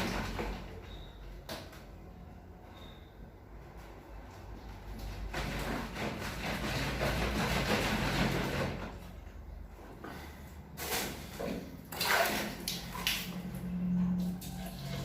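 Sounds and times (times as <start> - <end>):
water mixing in a container: 10.7 - 15.0.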